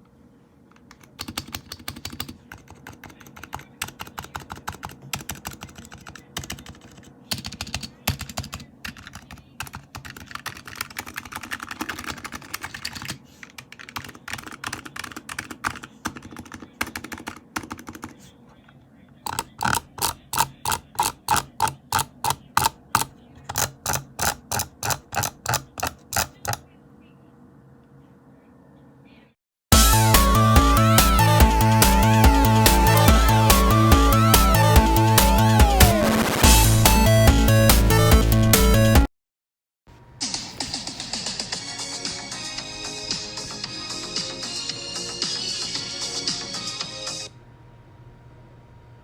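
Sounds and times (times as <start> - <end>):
keyboard typing: 0.8 - 18.3, 19.2 - 26.6.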